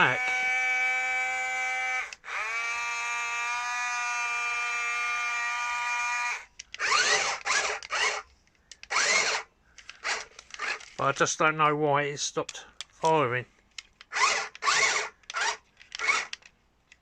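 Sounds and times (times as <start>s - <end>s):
toy tank electric motor whining: 0.0s - 8.3s, 8.9s - 10.9s, 14.1s - 16.4s.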